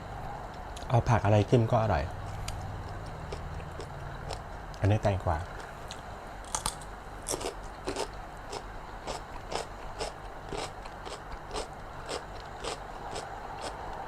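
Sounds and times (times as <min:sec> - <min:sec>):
person chewing cucumber: 0:02.2 - 0:04.8, 0:05.4 - 0:14.0.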